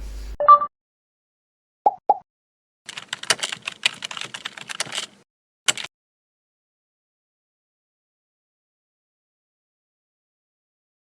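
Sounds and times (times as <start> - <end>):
computer keyboard typing: 2.9 - 5.9.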